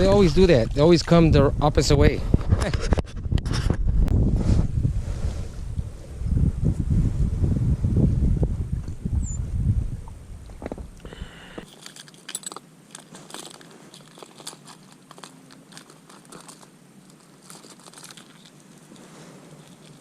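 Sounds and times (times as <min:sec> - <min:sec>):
low rumble: 0:00.0 - 0:11.6
fishing tackle rustling and clicking: 0:10.6 - 0:20.0.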